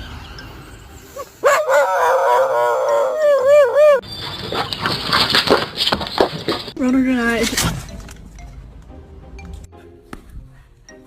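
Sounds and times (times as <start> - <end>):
dog howling: 1.4 - 4.0.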